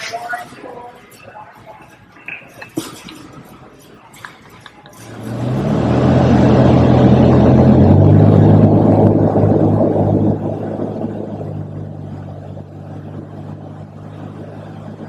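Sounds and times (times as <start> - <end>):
vehicle engine revving: 5.0 - 15.0.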